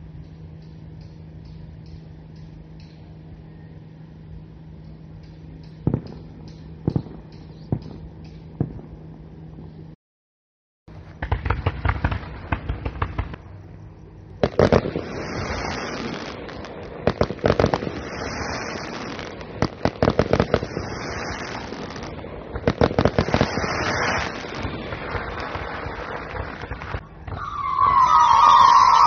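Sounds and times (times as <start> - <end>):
fireworks crackling pops: 4.8 - 10.0, 10.9 - 29.0
fireworks fizzing hiss: 10.9 - 29.0.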